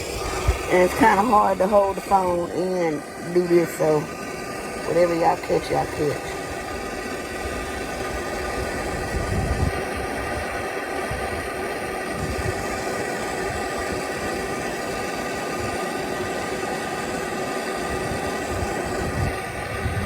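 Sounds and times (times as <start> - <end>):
gas torch burning: 0.0 - 20.0.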